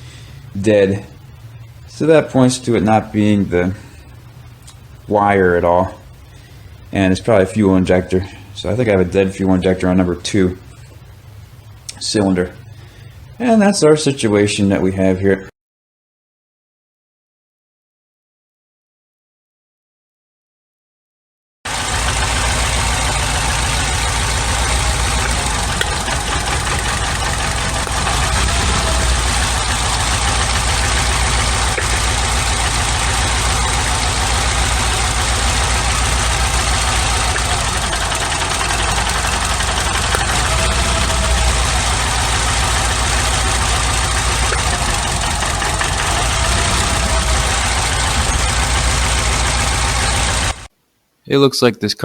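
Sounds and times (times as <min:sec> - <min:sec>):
car engine idling with a miss: 0:21.7 - 0:50.7.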